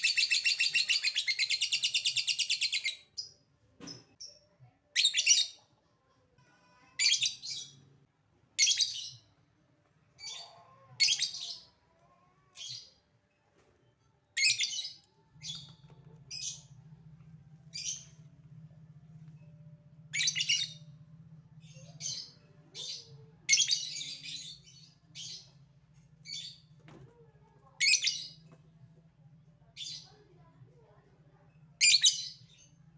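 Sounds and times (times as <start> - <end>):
faint low hum: 9.4 - 32.9.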